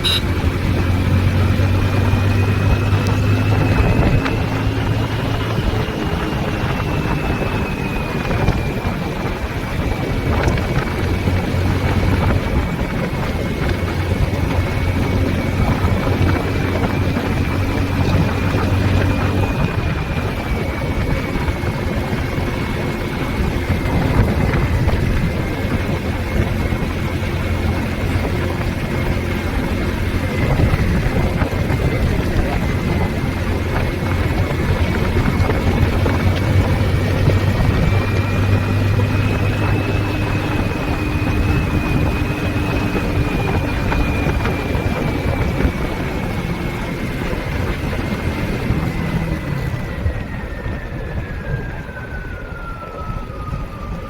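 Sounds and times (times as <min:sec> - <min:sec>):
thin high tone: 0:00.0 - 0:00.4
vehicle engine and road noise: 0:00.0 - 0:54.0.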